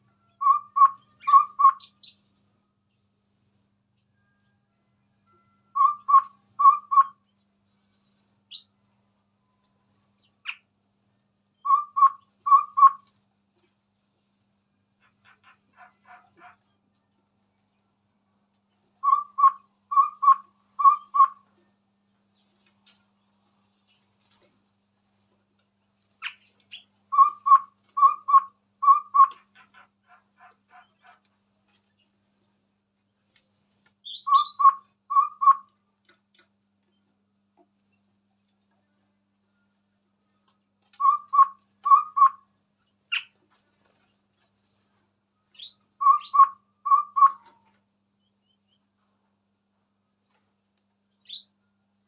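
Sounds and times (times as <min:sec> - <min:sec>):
bird hooting notes: 0:00.4 - 0:02.1, 0:05.5 - 0:07.2, 0:11.6 - 0:13.1, 0:19.0 - 0:21.6, 0:27.1 - 0:30.7, 0:34.1 - 0:35.7, 0:41.0 - 0:42.4, 0:45.6 - 0:47.8.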